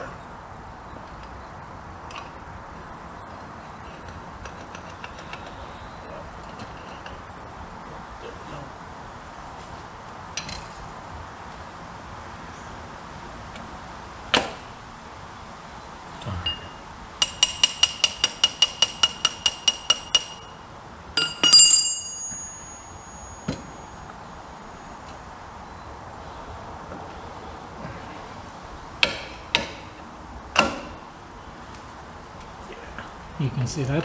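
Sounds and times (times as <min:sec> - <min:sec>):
metal clinks: 0:16.4 - 0:20.6, 0:21.2 - 0:25.1
ringing metallic taps: 0:16.4 - 0:20.6, 0:21.2 - 0:24.2
sharp metal knock: 0:16.5 - 0:20.5, 0:30.6 - 0:31.0.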